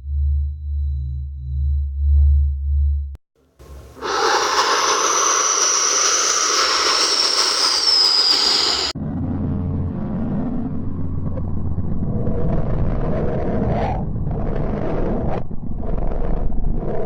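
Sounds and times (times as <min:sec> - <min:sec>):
low pulsing drone: 0:00.0 - 0:17.0
hissing wash of noise: 0:03.6 - 0:09.0
faint high whistle: 0:03.7 - 0:09.0
low rumble: 0:04.7 - 0:17.0.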